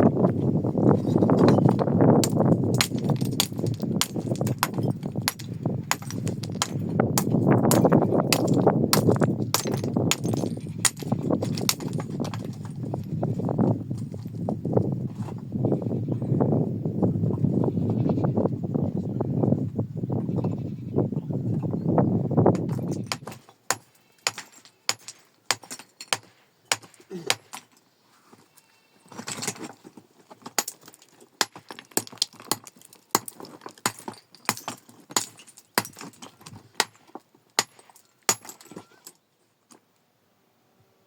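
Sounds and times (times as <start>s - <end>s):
stones clicking and knocking: 1.0s - 13.2s, 22.5s - 27.8s, 29.1s - 39.8s.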